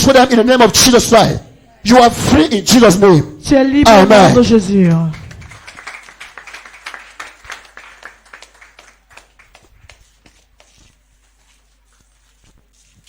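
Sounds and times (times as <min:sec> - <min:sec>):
congregation clapping: 0:04.9 - 0:10.8.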